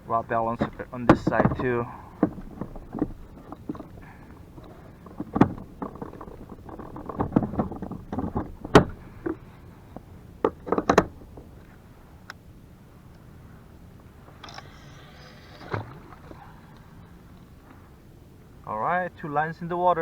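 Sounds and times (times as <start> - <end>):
fishing gear clicks and knocks: 0.0 - 12.4.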